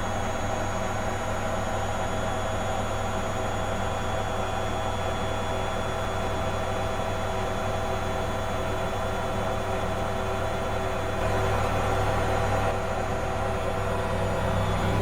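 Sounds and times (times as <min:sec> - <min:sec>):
washing machine spinning: 0:07.9 - 0:15.0.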